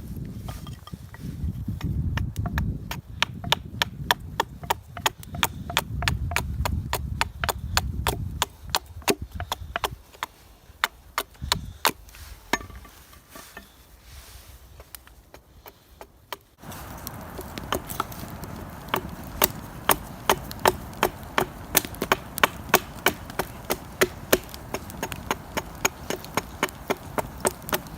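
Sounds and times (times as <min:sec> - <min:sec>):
low wind rumble: 0:00.0 - 0:13.0, 0:16.5 - 0:27.9
chopping strokes into wood: 0:00.4 - 0:13.8, 0:14.7 - 0:27.9.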